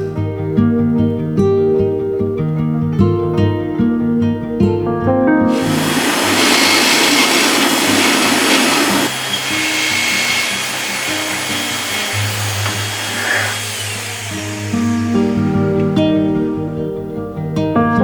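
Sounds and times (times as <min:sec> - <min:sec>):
acoustic guitar music: 0:00.0 - 0:18.0
power tool motor hissing: 0:05.5 - 0:16.2.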